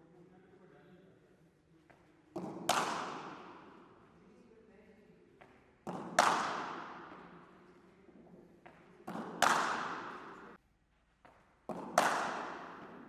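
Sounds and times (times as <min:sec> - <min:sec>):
echo of bat crack: 0:01.9 - 0:04.2, 0:05.4 - 0:10.6, 0:11.3 - 0:13.0
cricket bat striking ball: 0:02.4 - 0:04.0, 0:05.4 - 0:07.6, 0:08.6 - 0:10.6, 0:11.7 - 0:13.0.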